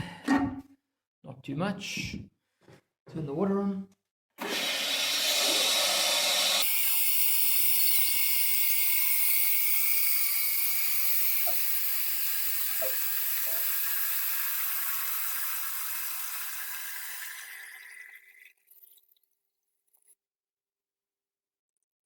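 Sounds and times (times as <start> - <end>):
toilet cistern refilling: 4.4 - 18.6.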